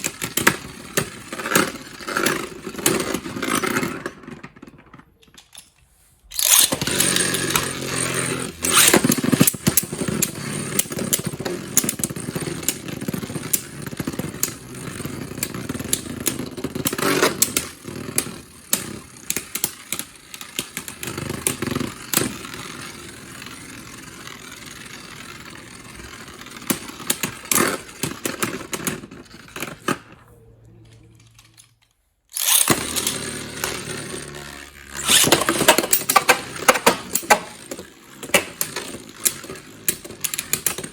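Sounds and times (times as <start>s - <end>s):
spinning tops whirring: 6.3s - 29.7s, 32.3s - 40.9s
spinning tops clashing: 6.4s - 10.9s, 32.4s - 37.7s.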